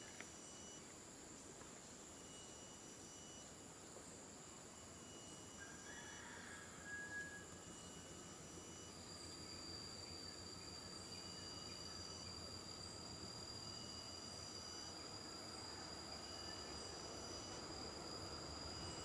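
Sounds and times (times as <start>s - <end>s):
insects shrilling: 7.4s - 19.0s.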